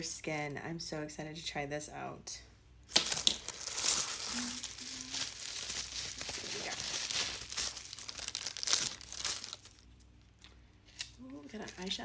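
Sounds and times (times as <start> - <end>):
packaging tearing: 2.9 - 9.9
packaging crinkling and rustling: 2.9 - 12.0.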